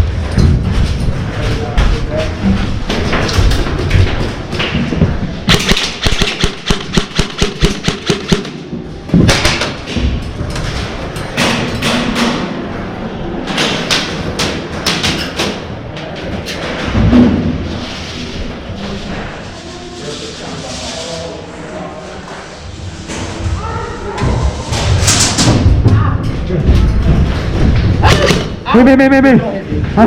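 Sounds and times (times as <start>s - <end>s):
airsoft guns firing rapidly: 5.5s - 8.6s.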